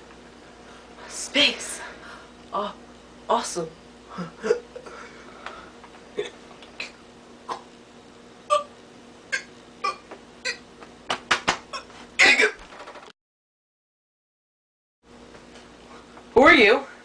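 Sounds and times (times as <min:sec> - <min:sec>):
man hiccupping: 0:08.5 - 0:08.7, 0:09.3 - 0:10.7, 0:11.7 - 0:12.6.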